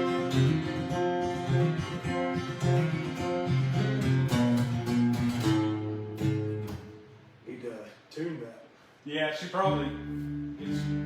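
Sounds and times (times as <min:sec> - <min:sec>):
acoustic guitar strummed and picked: 0:00.0 - 0:07.3, 0:09.6 - 0:11.0.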